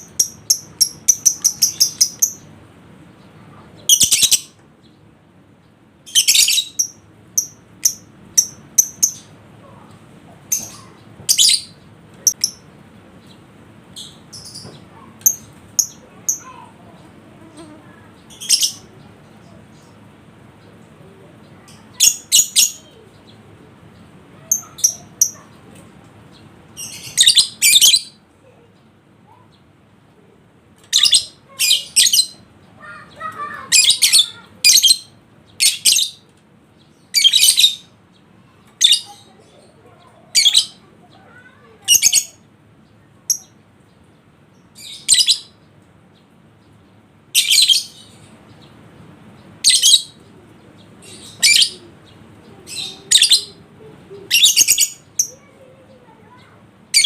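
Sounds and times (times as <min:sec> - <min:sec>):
lovebird shrill chattering: 0:00.0 - 0:02.4, 0:06.1 - 0:09.3, 0:51.0 - 0:51.9, 0:52.7 - 0:53.6, 0:54.3 - 0:55.4.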